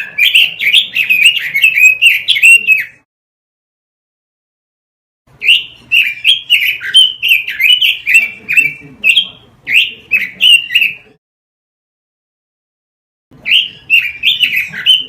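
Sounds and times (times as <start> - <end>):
bird singing sharp notes: 0.0 - 3.0.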